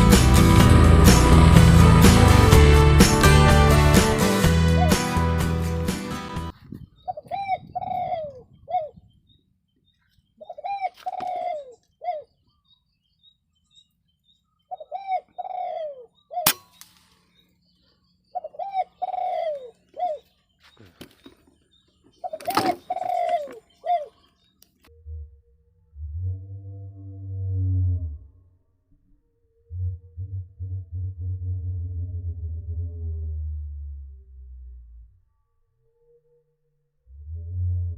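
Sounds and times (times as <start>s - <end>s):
dove cooing: 7.0s - 9.1s, 10.4s - 12.3s, 14.7s - 16.5s, 18.3s - 20.4s, 22.2s - 24.3s
sharp click: 16.5s - 17.2s.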